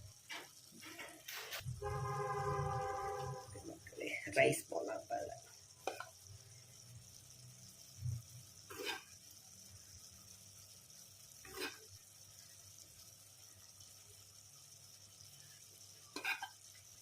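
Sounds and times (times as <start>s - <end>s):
pot sizzling on the heat: 0.0s - 17.0s.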